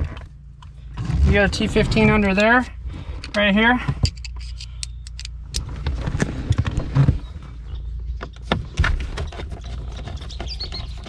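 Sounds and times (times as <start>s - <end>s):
steady low hum: 0.0s - 8.3s.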